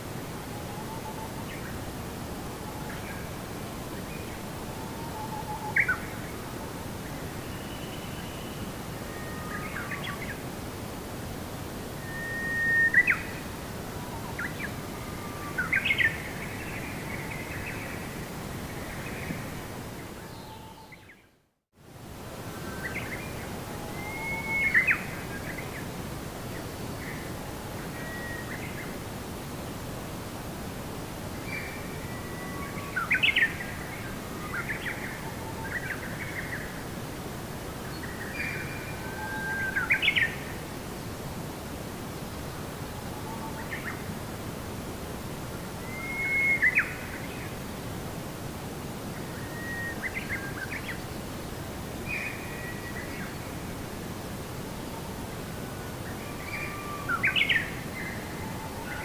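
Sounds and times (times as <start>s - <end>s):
steady background noise: 0.0s - 21.0s.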